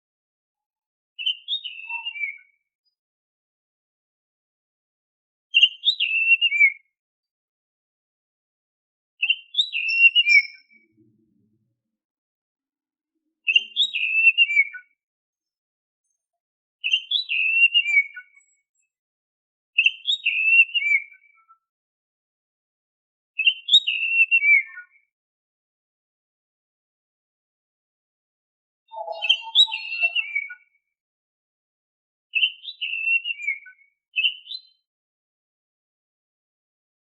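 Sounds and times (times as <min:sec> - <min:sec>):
bird whistling: 0:01.2 - 0:02.5, 0:05.6 - 0:06.7, 0:09.2 - 0:10.8, 0:13.5 - 0:14.8, 0:16.8 - 0:18.2, 0:19.8 - 0:21.1, 0:23.4 - 0:24.8, 0:28.9 - 0:30.6, 0:32.4 - 0:34.7.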